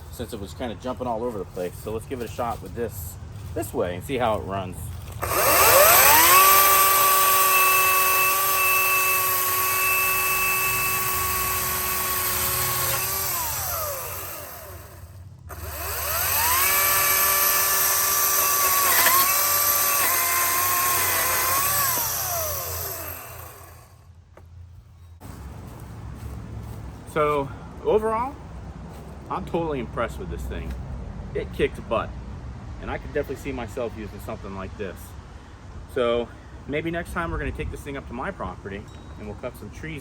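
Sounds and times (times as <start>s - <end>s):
electric chainsaw whine: 5.0s - 24.1s.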